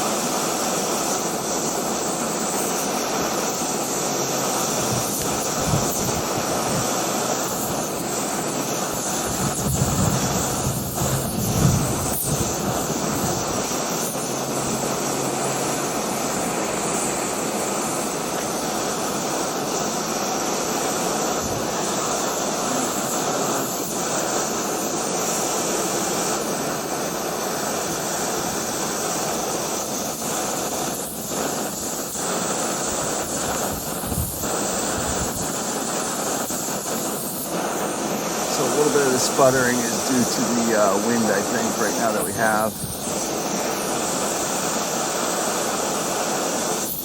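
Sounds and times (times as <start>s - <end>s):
stove burner flame hissing: 0.0s - 47.0s.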